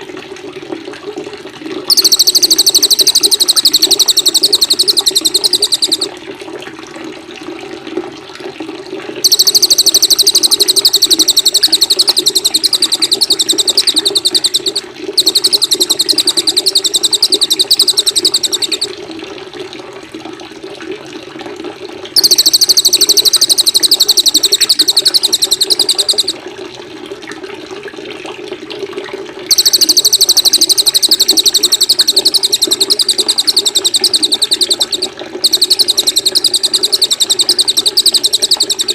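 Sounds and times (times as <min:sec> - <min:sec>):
running water: 0:01.8 - 0:06.4, 0:09.2 - 0:19.2, 0:22.1 - 0:26.4, 0:29.5 - 0:38.9
songbird high-pitched trill: 0:01.9 - 0:06.1, 0:09.2 - 0:18.9, 0:22.2 - 0:26.4, 0:29.5 - 0:38.9.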